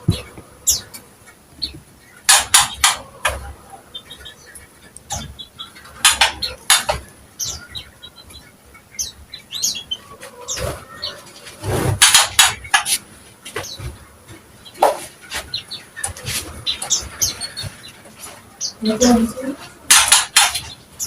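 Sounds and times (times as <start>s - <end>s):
bird singing scratchy notes: 0.0s - 21.0s
high bird chirps: 1.6s - 11.2s.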